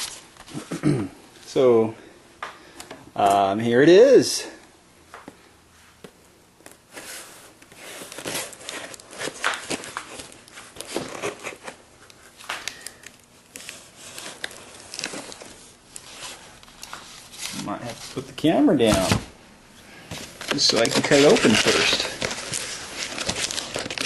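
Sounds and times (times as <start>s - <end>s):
package rustling and crinkling: 6.6s - 19.3s, 20.1s - 24.0s.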